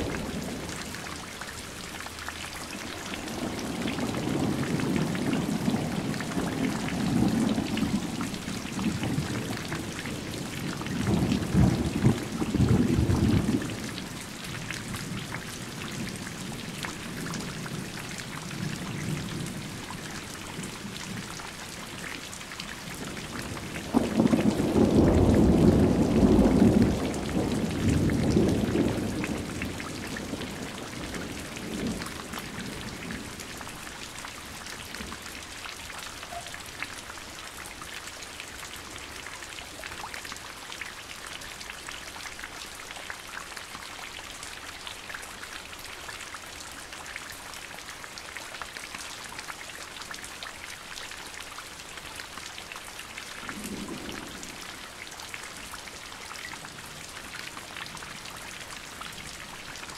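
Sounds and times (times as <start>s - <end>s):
steady rain falling: 0.0s - 59.9s
thunder rumbling: 23.4s - 33.4s.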